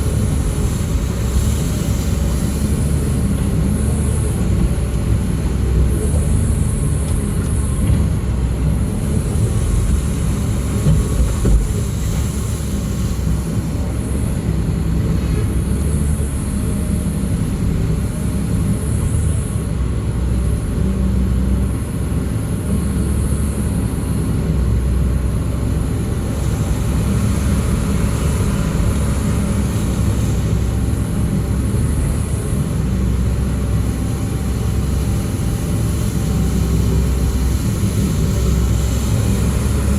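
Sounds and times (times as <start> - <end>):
faint high whine: 0.0 - 39.9
heavy diesel engine drone: 0.0 - 39.9.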